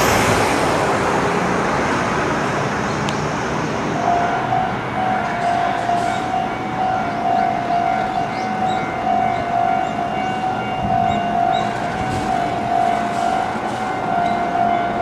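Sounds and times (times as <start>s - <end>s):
vehicle and road noise: 0.0s - 15.0s
level crossing alarm ringing: 4.0s - 15.0s.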